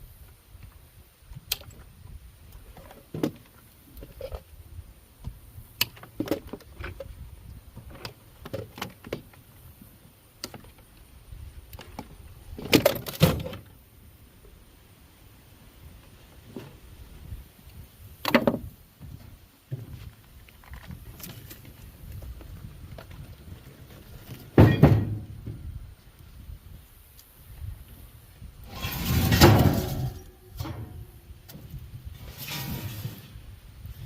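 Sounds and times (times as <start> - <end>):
metal parts knocking and clunking: 24.5 - 25.6, 28.7 - 31.6.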